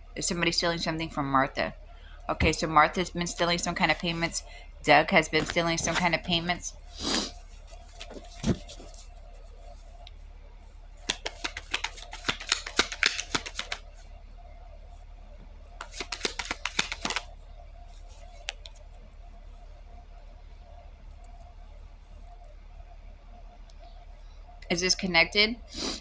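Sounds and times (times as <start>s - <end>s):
cards being shuffled: 5.2s - 9.1s, 11.0s - 13.8s, 15.8s - 17.3s.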